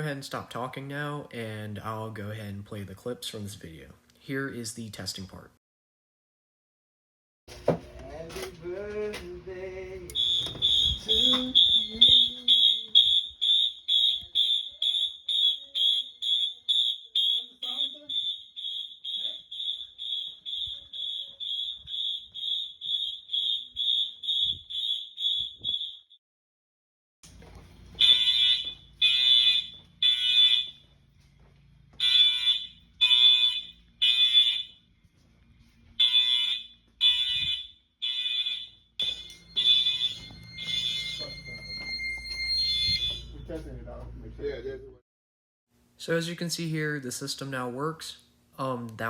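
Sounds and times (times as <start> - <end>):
fire alarm horn blasts: 10.1 - 26.2, 27.9 - 31.1, 32.0 - 34.9, 35.9 - 43.7
fast high beeping: 10.2 - 26.0, 39.0 - 43.4.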